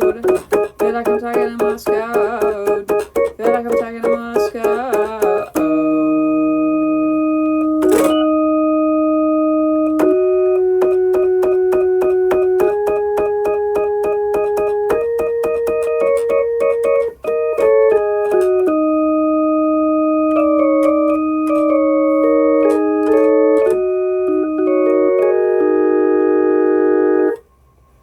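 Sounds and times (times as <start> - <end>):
electronic keyboard music: 0.0 - 27.5.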